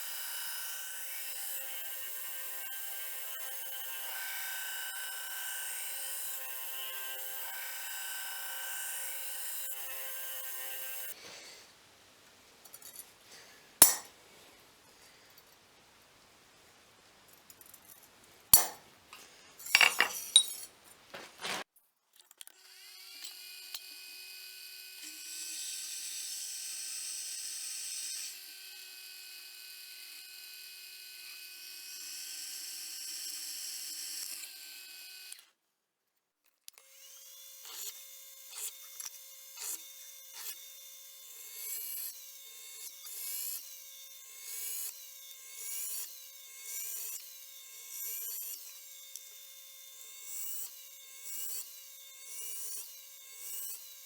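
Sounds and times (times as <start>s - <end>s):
sharp metal clanks: 13.8s - 14.1s, 18.5s - 18.8s, 19.7s - 20.7s.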